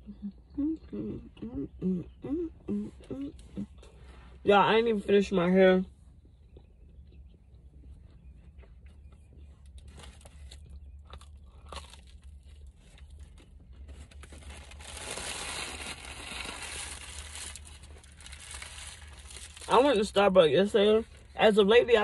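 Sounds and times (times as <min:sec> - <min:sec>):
paper crinkling and rustling: 0:12.8 - 0:19.9.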